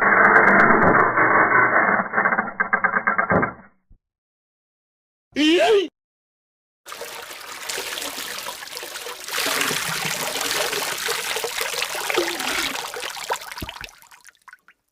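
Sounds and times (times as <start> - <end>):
liquid dripping: 6.9 - 14.9
liquid pouring: 6.9 - 14.9.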